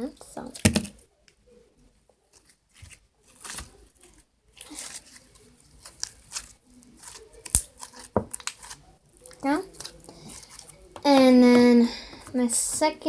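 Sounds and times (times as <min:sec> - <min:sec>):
slime crackling and tearing: 0:03.3 - 0:12.3.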